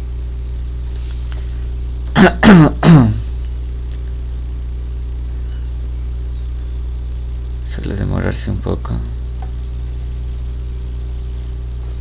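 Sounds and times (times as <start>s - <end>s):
steady electrical hum: 0.0s - 12.0s
man clearing his throat: 2.1s - 3.3s.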